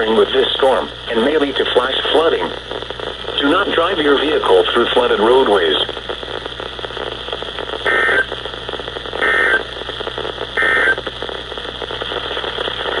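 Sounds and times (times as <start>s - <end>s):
radio static hiss: 0.0s - 13.0s
buzzing digital data bursts: 7.8s - 8.3s, 9.2s - 9.7s, 10.6s - 11.0s.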